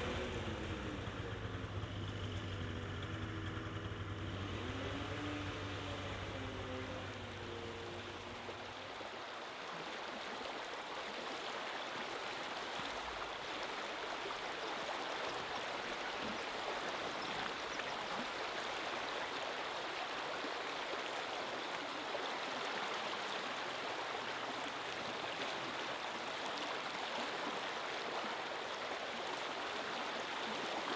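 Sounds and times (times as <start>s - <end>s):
engine hum: 0.0s - 9.0s
stream flowing: 0.0s - 30.9s.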